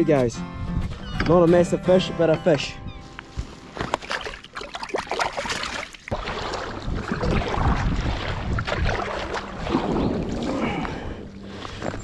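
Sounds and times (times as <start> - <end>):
water lapping around raft: 3.4 - 12.0
wind buffeting microphone: 6.1 - 12.0.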